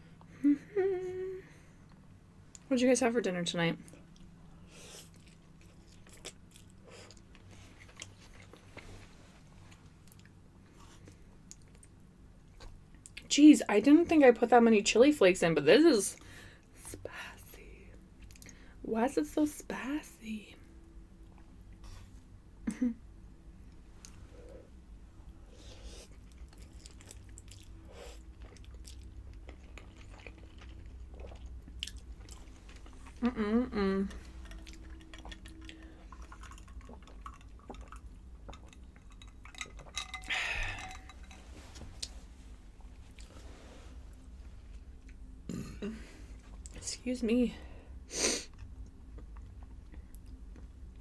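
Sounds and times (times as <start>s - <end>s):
low steady hum: 0.0s - 51.0s
person chewing: 4.0s - 8.8s, 25.8s - 33.4s, 34.0s - 41.4s.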